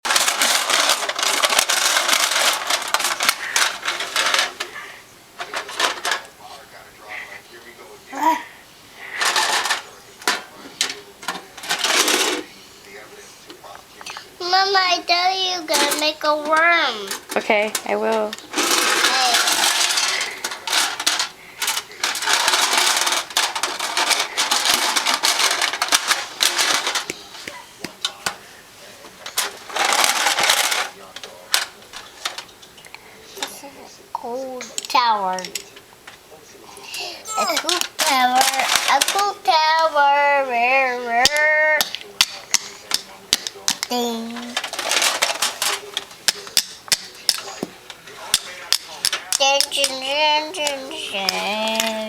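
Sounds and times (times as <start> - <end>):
plastic toy pieces rattling: 0.1 - 4.6, 11.6 - 12.4, 18.5 - 27.1, 29.4 - 30.9, 37.3 - 40.0, 41.2 - 45.8.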